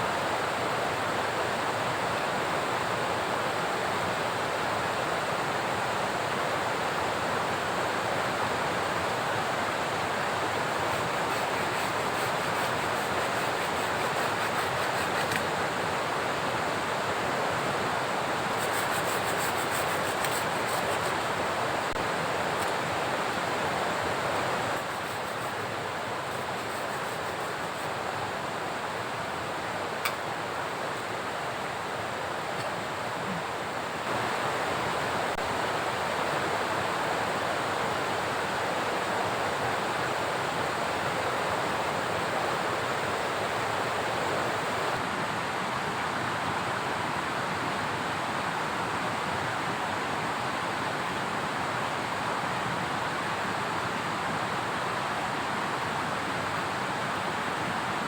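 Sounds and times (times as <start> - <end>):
rushing water: 0.0 - 58.0
heavy rain hissing: 8.1 - 37.0.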